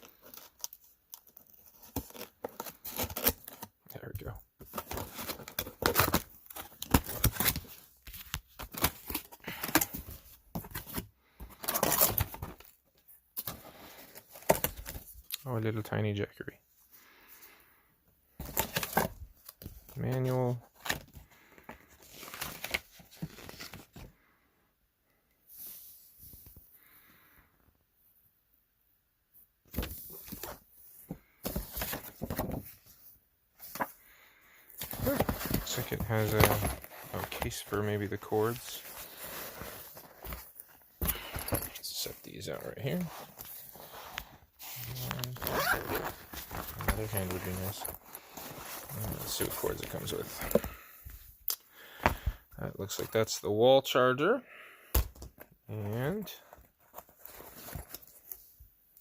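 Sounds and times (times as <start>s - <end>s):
cardboard and packing rustling: 0.0s - 3.8s, 4.6s - 15.3s, 18.3s - 24.3s, 29.7s - 34.0s, 34.7s - 53.4s, 55.1s - 58.6s.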